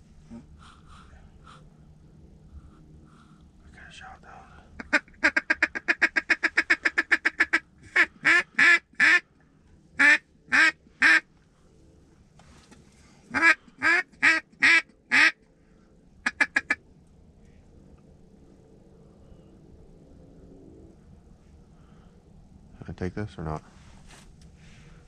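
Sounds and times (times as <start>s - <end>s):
duck quacking: 4.8s - 9.2s, 10.0s - 11.2s, 13.3s - 15.4s, 16.2s - 16.8s.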